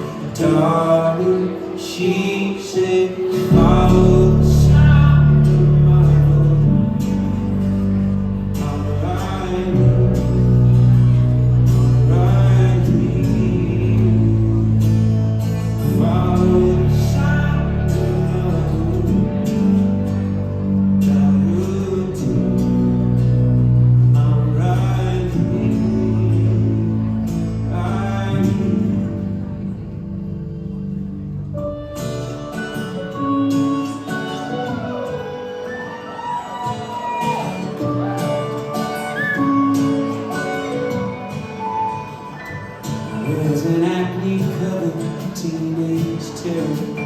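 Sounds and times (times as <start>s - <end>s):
guitar: 0.0s - 47.0s
keyboard chords: 0.0s - 47.0s
bass: 3.2s - 35.4s.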